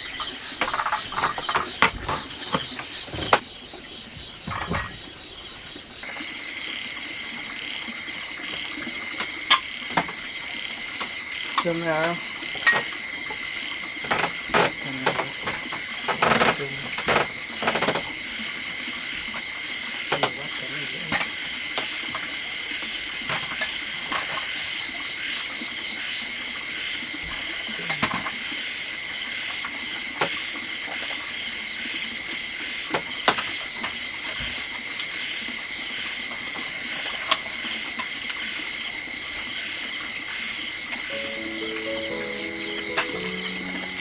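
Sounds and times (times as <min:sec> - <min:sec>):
music: 0:41.1 - 0:44.0.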